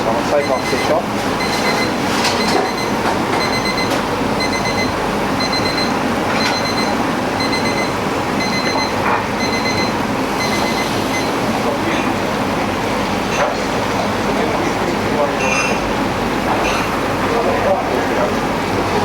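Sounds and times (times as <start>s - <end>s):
electronic alarm beeping: 0.4s - 11.4s
loud rushing background noise: 17.1s - 19.0s.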